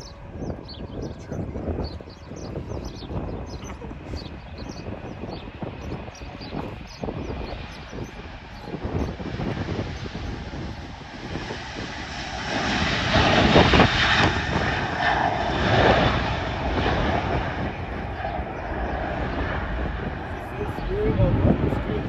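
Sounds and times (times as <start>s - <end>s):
jet engines passing: 0.0s - 22.0s.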